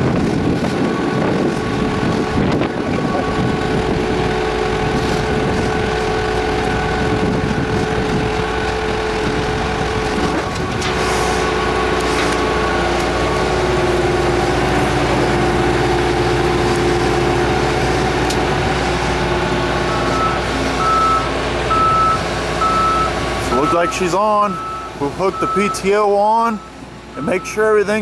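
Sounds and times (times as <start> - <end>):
combine engine running: 0.0 - 28.0
high warning beeps: 19.9 - 28.0.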